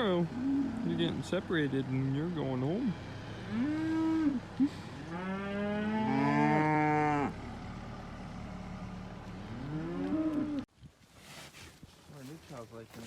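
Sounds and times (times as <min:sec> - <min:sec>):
cattle mooing: 0:00.0 - 0:01.1, 0:03.4 - 0:07.4, 0:09.5 - 0:10.6.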